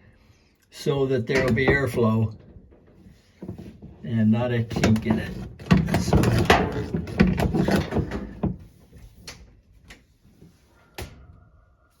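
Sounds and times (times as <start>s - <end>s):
dryer knocking and scraping: 1.3s - 9.6s.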